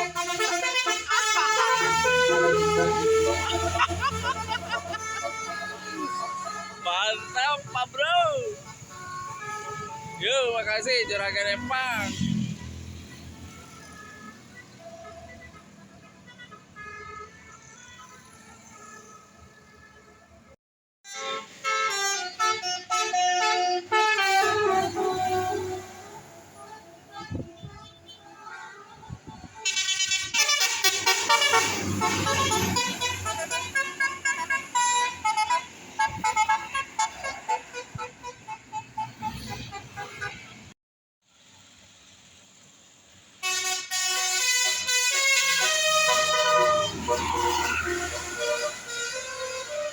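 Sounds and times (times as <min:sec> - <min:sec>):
musical bus horn notes: 0:00.0 - 0:10.3, 0:21.0 - 0:40.8, 0:43.4 - 0:49.9
bus engine rumble: 0:00.0 - 0:20.5, 0:21.2 - 0:40.8, 0:41.4 - 0:49.9.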